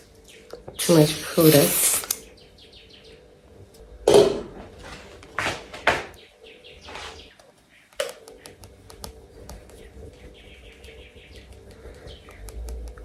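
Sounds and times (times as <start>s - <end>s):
small birds chirping: 0.0s - 3.4s, 6.1s - 13.0s.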